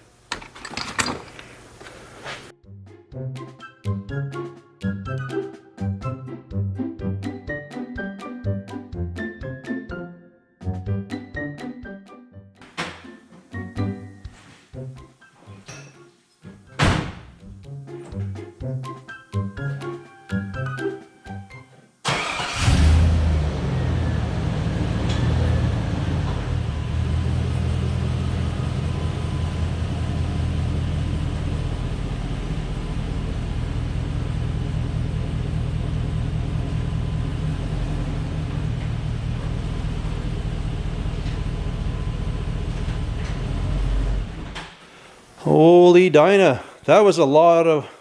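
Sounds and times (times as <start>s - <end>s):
car engine running: 22.6s - 44.6s.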